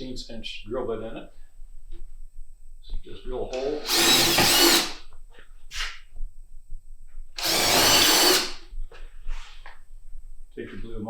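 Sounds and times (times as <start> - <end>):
power drill boring into wall: 3.6 - 5.0, 7.4 - 8.6.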